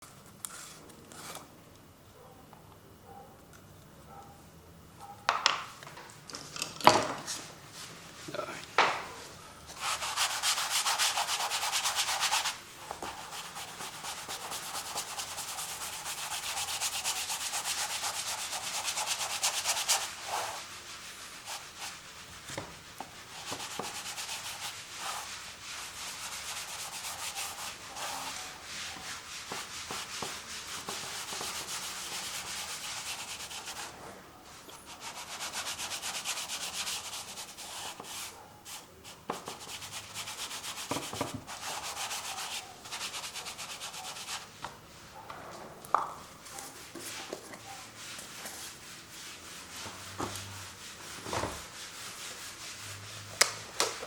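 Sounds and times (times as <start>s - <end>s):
paint scraping on canvas: 9.7s - 34.0s, 34.6s - 44.6s, 46.5s - 53.7s.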